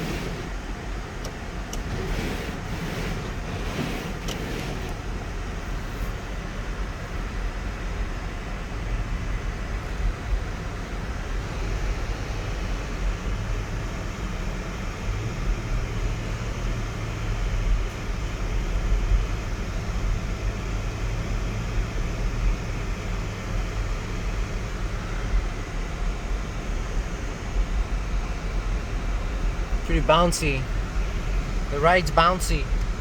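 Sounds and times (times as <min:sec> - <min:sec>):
engine rumble: 0:00.0 - 0:33.0
tyres on the road: 0:00.0 - 0:33.0
steady hum: 0:24.9 - 0:33.0.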